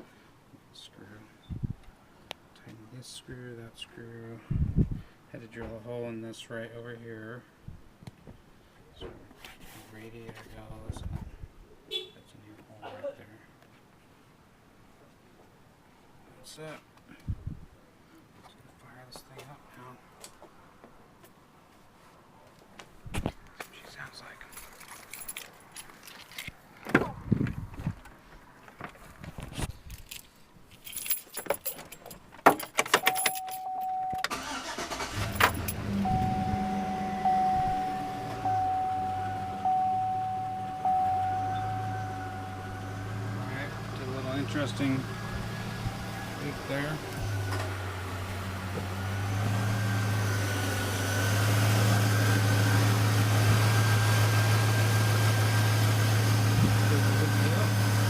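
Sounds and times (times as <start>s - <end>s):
keys jangling and clicking: 24.4s - 26.5s, 29.9s - 33.8s
car engine starting and idling: 32.9s - 58.0s
electronic chime tone: 33.1s - 34.2s, 36.0s - 43.1s
faint whine: 35.2s - 45.0s.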